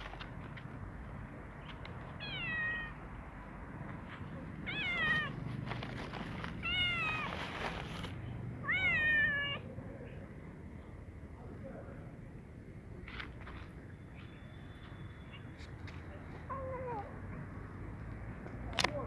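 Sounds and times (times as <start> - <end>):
cat meowing: 2.2 - 3.0, 4.6 - 5.4, 6.6 - 8.0, 8.6 - 9.6.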